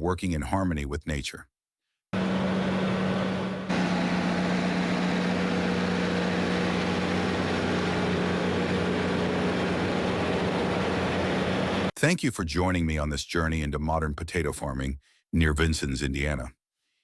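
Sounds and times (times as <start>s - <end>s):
tractor engine droning: 2.2s - 11.9s.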